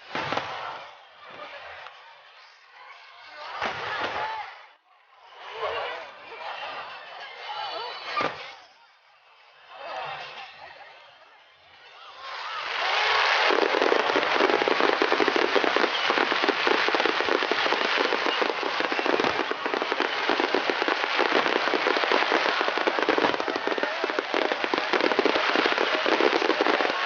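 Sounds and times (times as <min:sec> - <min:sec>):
fireworks crackling: 0:00.0 - 0:02.5, 0:09.3 - 0:27.0.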